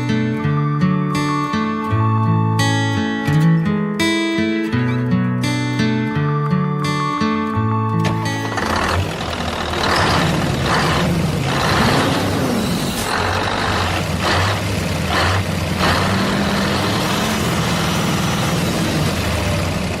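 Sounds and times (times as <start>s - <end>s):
heavy vehicle engine running: 8.0s - 20.0s.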